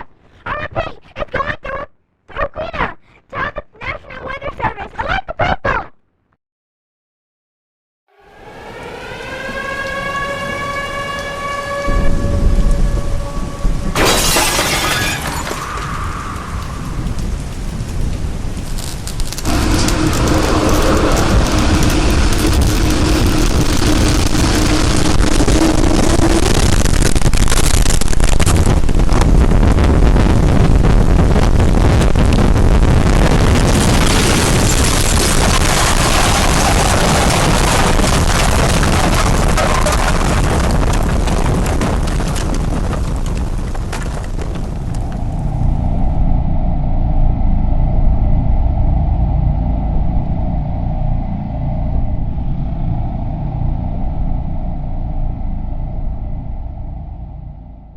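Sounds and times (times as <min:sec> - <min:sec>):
siren tone: 0:08.1 - 0:14.0, 0:19.5 - 0:26.6, 0:45.5 - 0:57.9
rain: 0:08.5 - 0:14.0, 0:15.2 - 0:45.6
heavy wind buffeting: 0:08.9 - 0:14.0, 0:15.6 - 0:57.9
loud crashing rush: 0:18.9 - 0:45.8.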